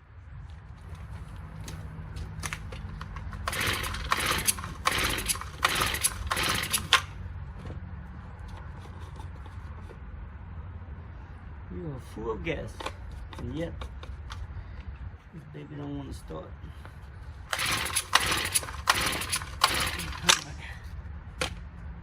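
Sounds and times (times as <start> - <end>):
recoil starter pulls: 2.4 - 7.2, 17.5 - 20.6.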